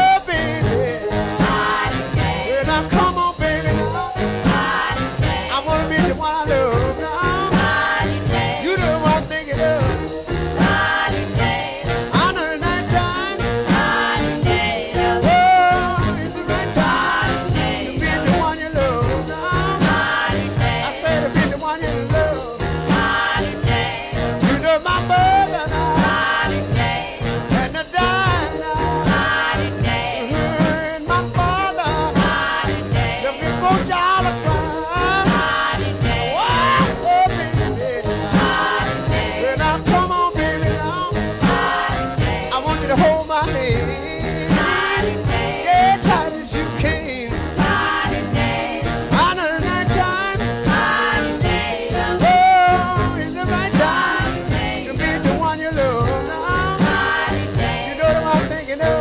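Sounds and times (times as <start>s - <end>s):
upbeat swing music: 0.0s - 59.0s.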